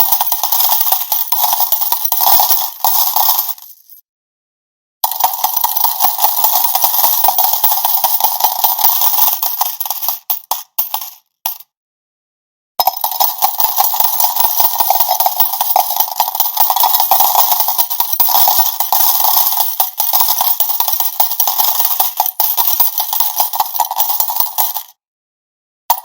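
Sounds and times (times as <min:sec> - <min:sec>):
coins pouring and clattering: 0:00.0 - 0:04.0, 0:05.0 - 0:11.7, 0:12.8 - 0:24.9.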